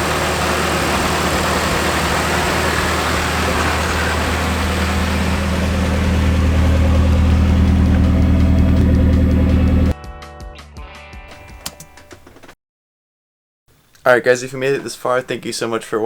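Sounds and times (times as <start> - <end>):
car engine running: 0.0 - 9.9.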